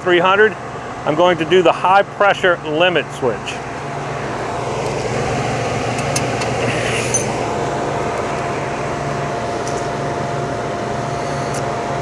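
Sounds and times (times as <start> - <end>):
heater machinery humming: 0.0 - 12.0.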